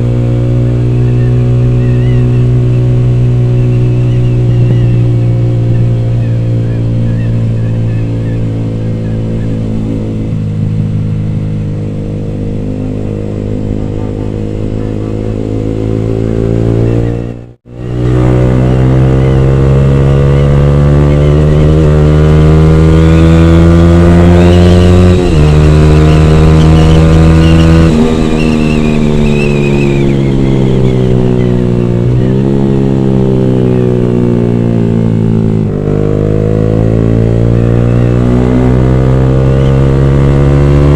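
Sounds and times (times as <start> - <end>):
motorcycle engine accelerating: 0.0 - 40.9.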